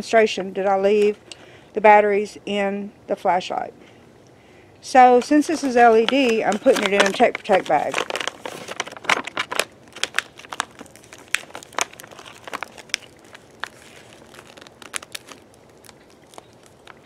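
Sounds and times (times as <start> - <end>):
bag crinkling and crackling: 5.1 - 17.0.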